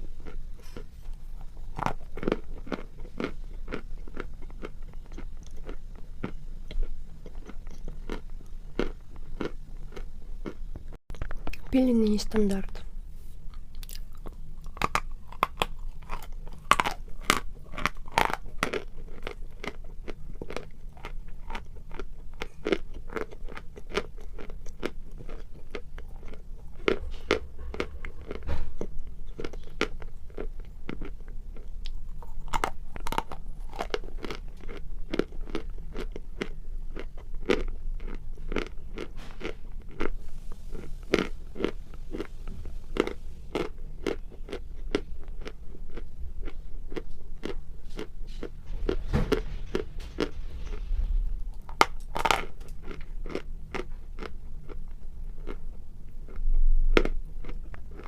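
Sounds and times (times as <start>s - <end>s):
chalk being chewed: 13.3s - 48.6s.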